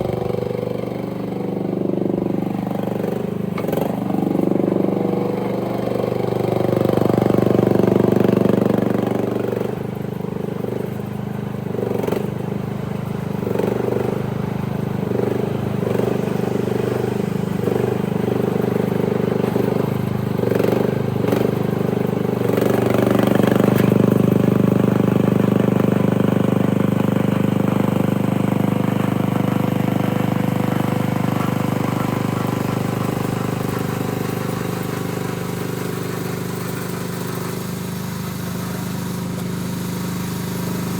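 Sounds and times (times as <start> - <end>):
mini excavator engine running: 0.0 - 40.9.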